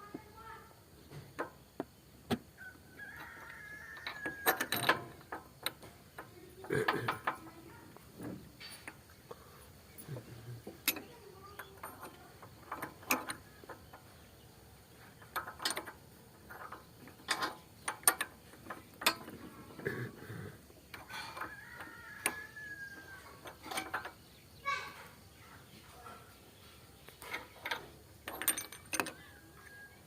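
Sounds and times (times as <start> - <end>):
wrench clicking on metal: 3.4 - 7.6, 10.8 - 14.1, 15.2 - 19.4, 20.9 - 24.2, 27.2 - 29.2.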